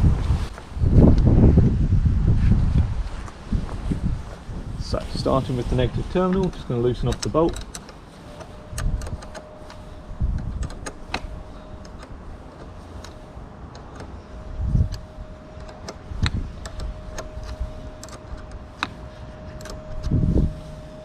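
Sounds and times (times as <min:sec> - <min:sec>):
faint steady hum: 0:00.0 - 0:21.0
socket ratchet clicking: 0:06.4 - 0:14.2, 0:14.8 - 0:20.2.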